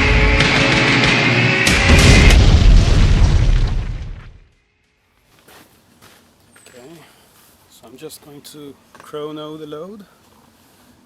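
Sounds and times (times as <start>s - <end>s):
sharp drum hits: 0.0s - 4.2s
loud intro music: 0.0s - 4.4s.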